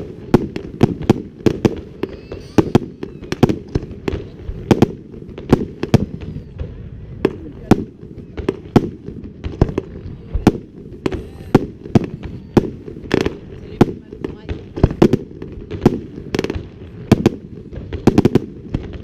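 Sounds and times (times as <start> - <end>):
fireworks shells bursting: 0.0 - 6.5.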